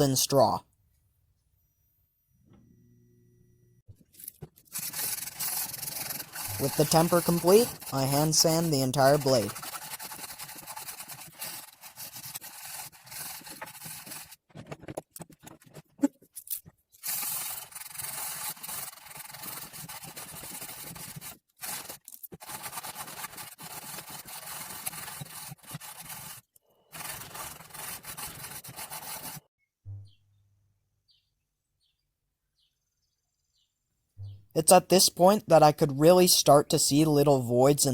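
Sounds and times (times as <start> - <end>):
sandpaper rubbing on steel blade: 4.7 - 14.4, 17.0 - 29.4.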